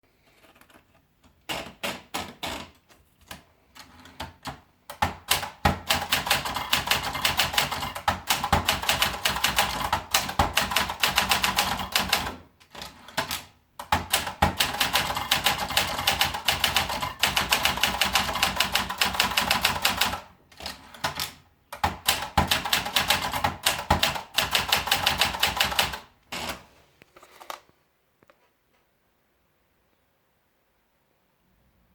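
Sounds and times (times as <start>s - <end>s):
manual typewriter keystrokes: 0.4s - 26.6s.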